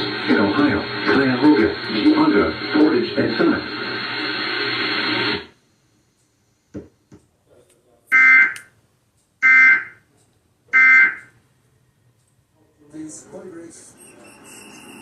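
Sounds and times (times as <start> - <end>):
two-tone digital buzzing bursts: 9.4 - 10.0, 10.8 - 11.2.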